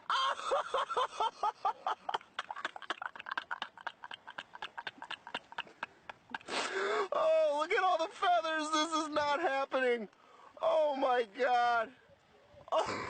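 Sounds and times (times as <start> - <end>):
person laughing high-pitched: 0.0 - 6.8.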